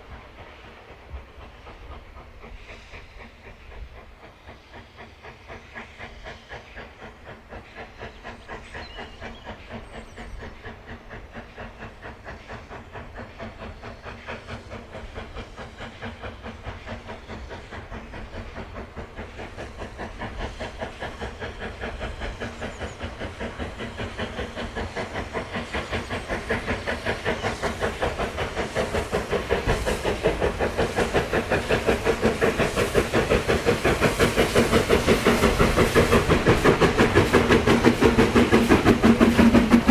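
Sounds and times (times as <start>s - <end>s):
steam locomotive chuffing: 0.0s - 39.9s.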